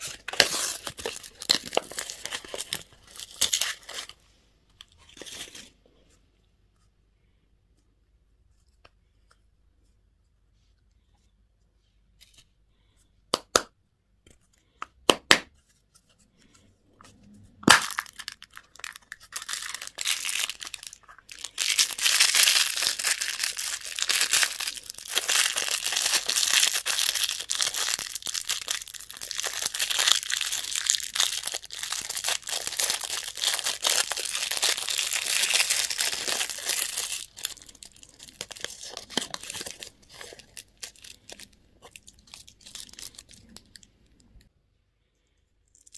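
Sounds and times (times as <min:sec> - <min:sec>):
plastic wrapper crinkling: 0:00.0 - 0:04.2, 0:17.6 - 0:44.4.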